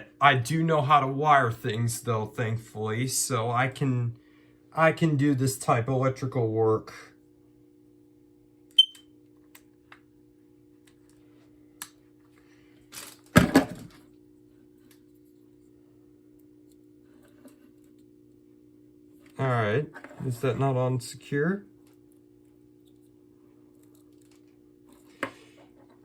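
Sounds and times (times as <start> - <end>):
low electrical hum: 0.0 - 26.0
smoke alarm chirp: 8.8 - 9.1.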